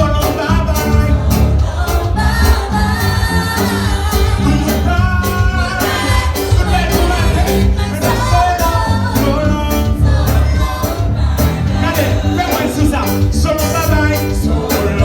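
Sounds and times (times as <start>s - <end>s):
gospel singing: 0.0s - 15.0s
steady drum beat: 0.0s - 15.0s
strong bass line: 0.0s - 15.0s.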